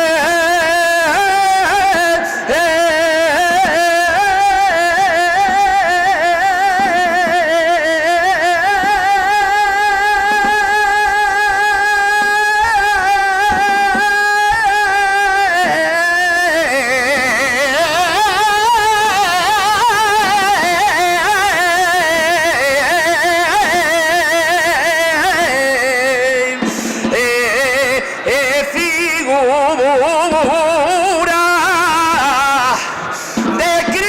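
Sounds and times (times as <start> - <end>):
man singing unaccompanied: 0.0 - 34.0
breath: 2.2 - 2.5, 26.7 - 27.1, 33.0 - 33.6.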